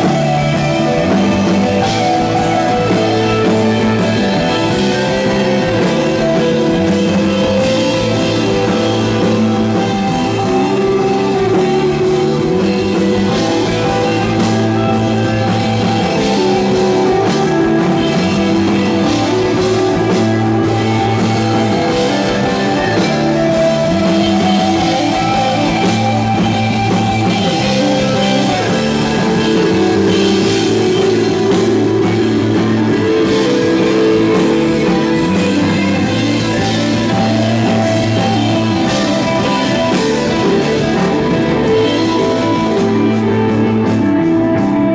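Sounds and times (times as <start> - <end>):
rock band playing live: 0.0 - 44.9.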